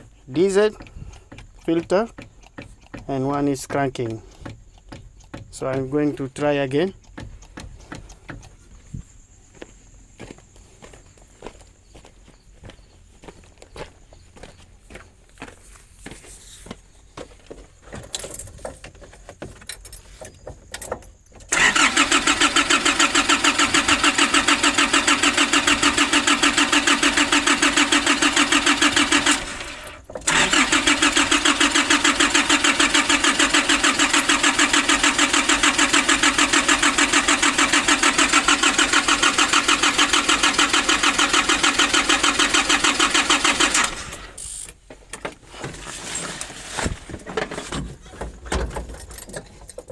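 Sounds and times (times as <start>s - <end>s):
starter motor cranking engine: 0.0s - 9.0s, 21.4s - 44.8s.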